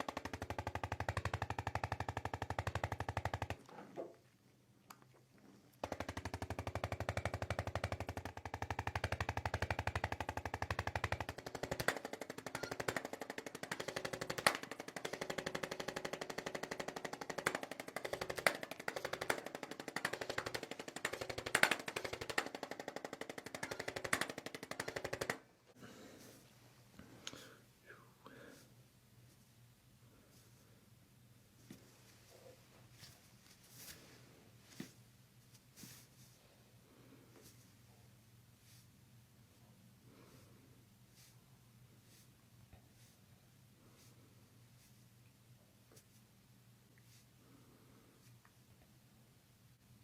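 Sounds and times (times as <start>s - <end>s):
percussion massager hammering: 0.0s - 3.7s, 5.8s - 25.6s.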